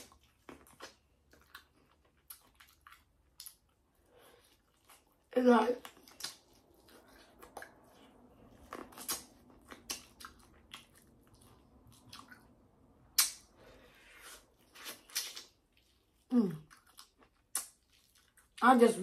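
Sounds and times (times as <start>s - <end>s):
wet chewing: 0.0s - 18.6s
lip smacks: 5.8s - 15.9s, 16.6s - 18.5s.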